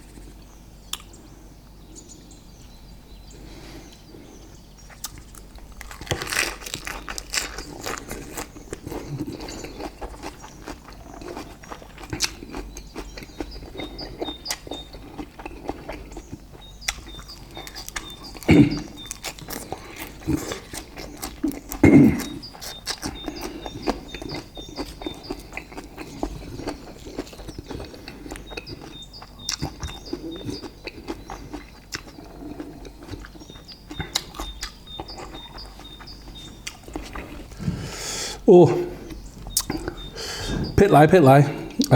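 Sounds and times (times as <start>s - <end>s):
chewing and lip smacking: 0.0s - 1.2s, 3.8s - 41.9s
loud mouth sounds: 18.4s - 19.0s, 37.0s - 41.9s.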